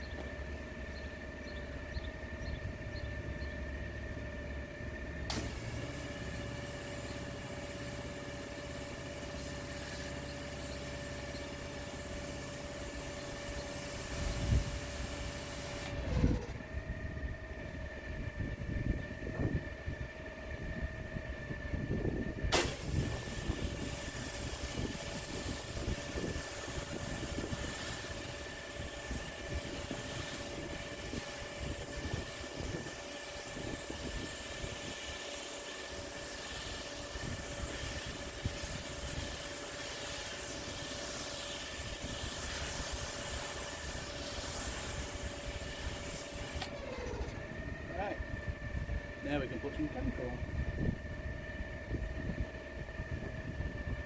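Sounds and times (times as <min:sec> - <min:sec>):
pressure washer engine running: 0:00.0 - 0:16.8, 0:22.5 - 0:50.9
high-pressure water spray hissing: 0:05.3 - 0:16.1, 0:22.5 - 0:47.3.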